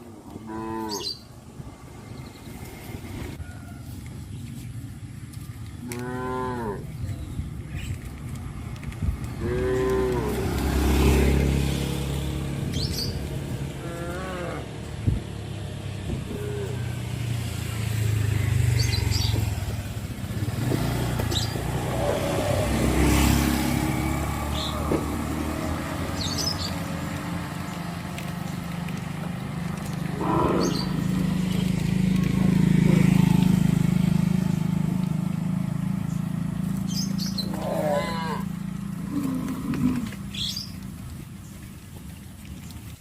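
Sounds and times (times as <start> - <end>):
cows mooing: 0.4 - 1.2, 5.8 - 6.9, 9.4 - 11.6, 13.7 - 14.7, 16.2 - 17.0, 21.5 - 26.2, 30.0 - 33.8, 37.4 - 40.2
vehicle engine running: 6.9 - 43.0.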